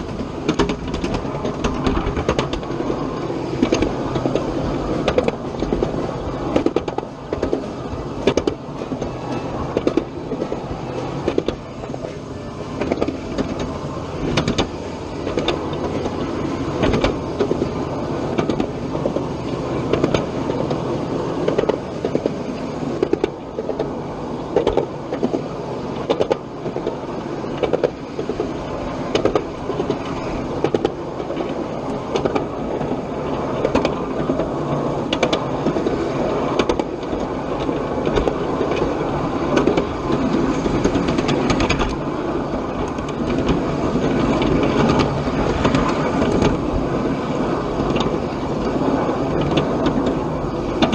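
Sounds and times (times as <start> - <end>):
miniature train rumbling: 0.0 - 50.9
wheels clicking on track: 0.0 - 50.9.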